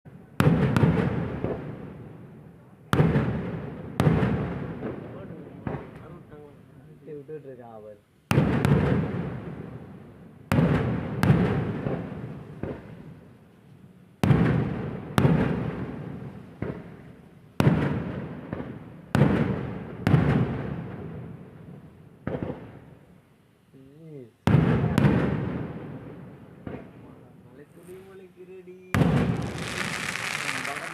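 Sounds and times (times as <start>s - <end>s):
firecracker bangs with echo: 0.2s - 2.2s, 2.9s - 6.1s, 8.3s - 13.2s, 14.2s - 22.8s, 24.4s - 27.2s, 28.9s - 30.9s.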